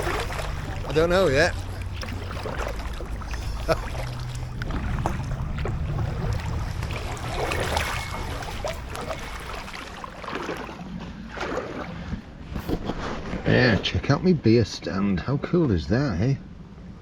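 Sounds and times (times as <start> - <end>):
low rumble: 0.0 - 11.3
paddle splashing in water: 0.0 - 13.4.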